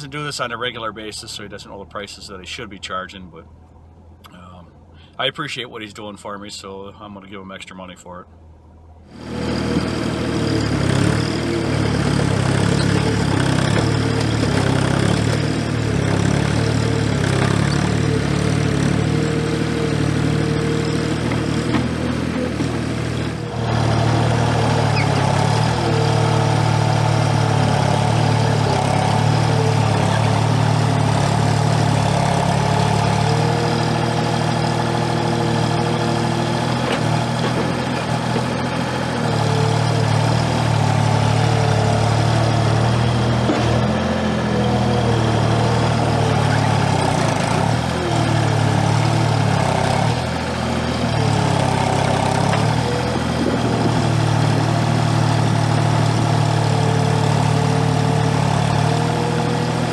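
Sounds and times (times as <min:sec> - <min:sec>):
diesel engine running: 0:00.0 - 0:07.0, 0:08.3 - 0:59.9.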